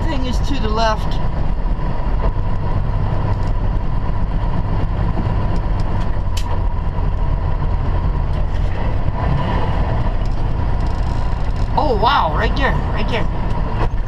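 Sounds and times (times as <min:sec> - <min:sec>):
road noise: 0:00.0 - 0:14.0
truck engine drone: 0:00.0 - 0:14.0.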